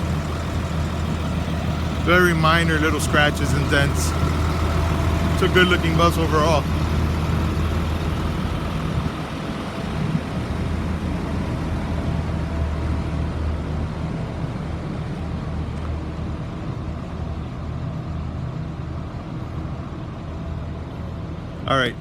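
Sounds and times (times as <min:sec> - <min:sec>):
diesel bus engine idling: 0:00.0 - 0:22.0.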